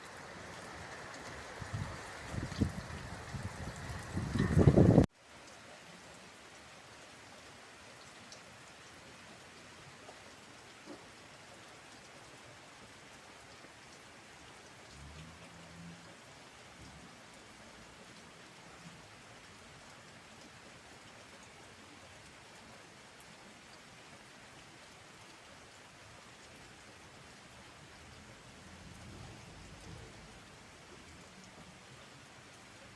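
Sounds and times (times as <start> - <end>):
heavy rain falling: 0.0 - 5.1, 27.2 - 32.9.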